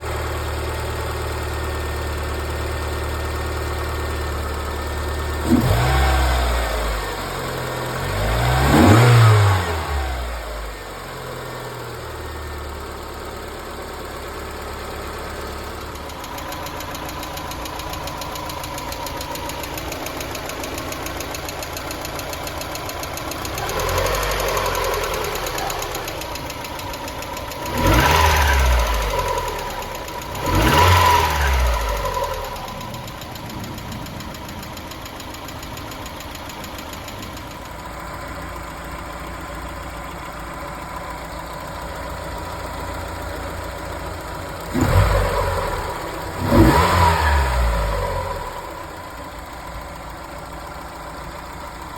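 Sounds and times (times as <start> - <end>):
car engine idling and revving: 0.0 - 51.9
engine tappet ticking: 15.8 - 45.0.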